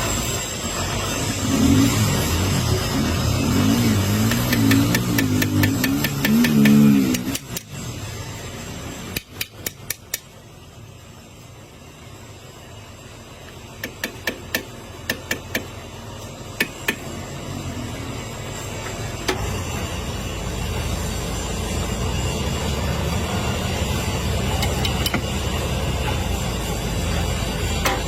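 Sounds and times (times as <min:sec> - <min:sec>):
sharp metal taps: 0:04.3 - 0:07.7, 0:09.2 - 0:10.3, 0:13.8 - 0:15.7.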